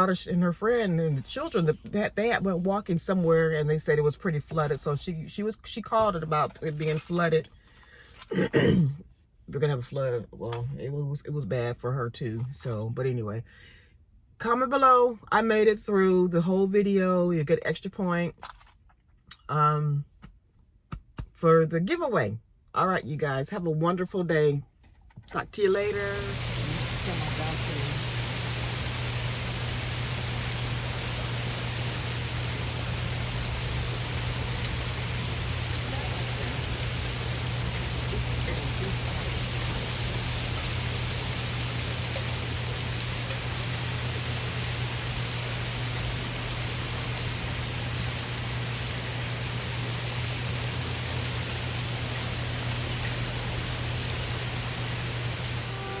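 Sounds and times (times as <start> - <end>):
rain pouring: 25.6 - 56.0
constant low hum: 26.1 - 56.0.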